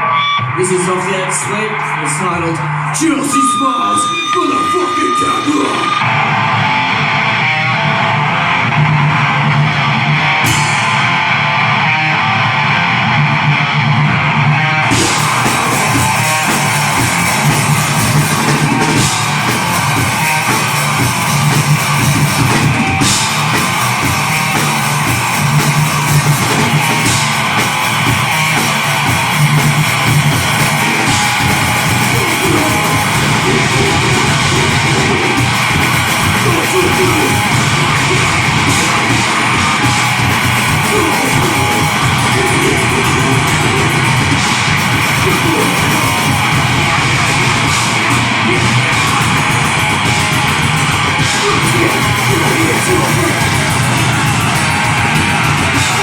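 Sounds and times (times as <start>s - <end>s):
distorted electric guitar: 0.0s - 56.0s
drum kit with cymbals: 10.3s - 11.5s, 14.9s - 56.0s.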